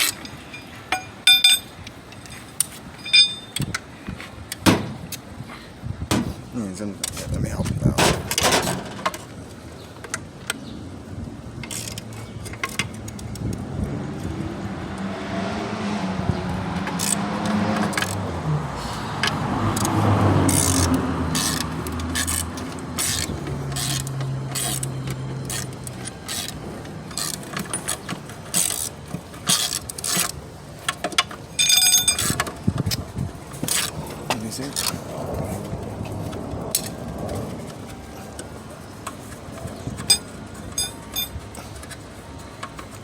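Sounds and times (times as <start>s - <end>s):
hand tools clinking on metal: 0.0s - 3.8s, 19.2s - 32.6s, 39.1s - 43.0s
ringing metallic ping: 3.0s - 3.6s.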